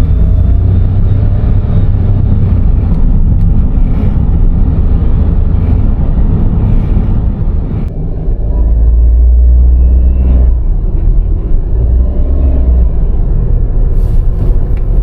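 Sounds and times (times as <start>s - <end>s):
car engine low rumble: 0.0s - 15.0s.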